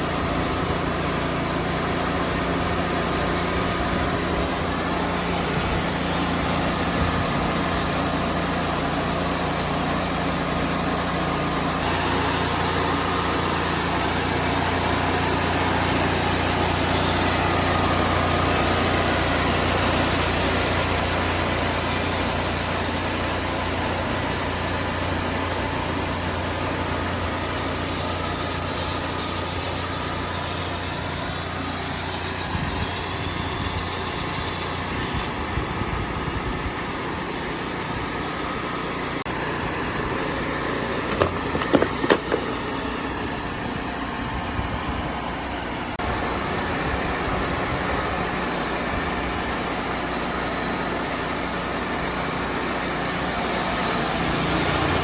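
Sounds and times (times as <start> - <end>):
sawmill engine running: 0.0 - 55.0
short sharp knocks: 41.1 - 42.6.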